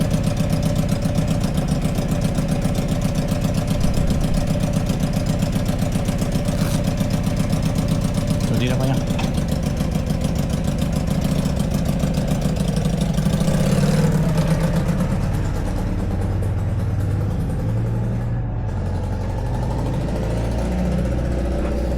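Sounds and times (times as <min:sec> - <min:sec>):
motorcycle engine idling: 0:00.0 - 0:21.9.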